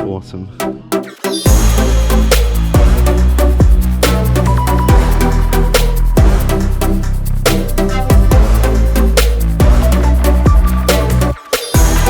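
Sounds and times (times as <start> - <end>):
electronic dance music: 0.6 - 12.0
kick drum hits: 1.5 - 1.8, 2.8 - 3.0, 3.6 - 3.9, 4.9 - 5.2, 6.2 - 6.4, 8.1 - 8.6, 9.6 - 9.8, 10.5 - 10.8, 11.8 - 12.0
high cymbal hits: 1.5 - 6.5
deep bass line: 1.5 - 12.0.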